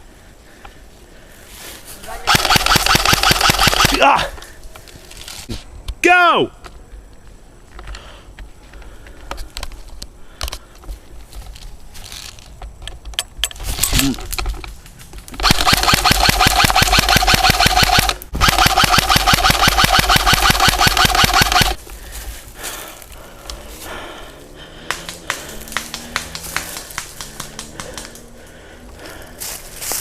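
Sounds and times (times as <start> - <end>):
airsoft rifle full auto bursts: 2.3 - 4.0, 15.4 - 21.8
rustling: 4.4 - 5.7, 8.5 - 12.6.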